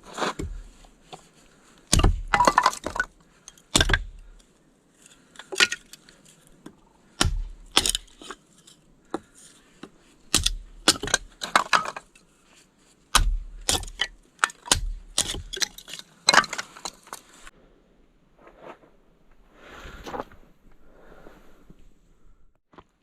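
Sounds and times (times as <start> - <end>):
dull thuds: 0.0 - 0.9, 1.9 - 3.1, 3.7 - 4.4, 7.2 - 8.3, 13.1 - 15.7.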